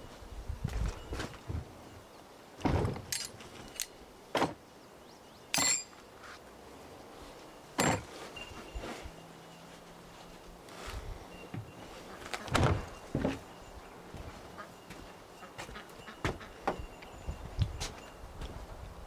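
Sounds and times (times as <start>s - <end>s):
knocks and clunks: 2.6s - 4.6s, 7.8s - 8.1s, 11.6s - 13.6s
metallic clink: 3.1s - 4.0s, 5.5s - 6.1s, 7.8s - 8.8s.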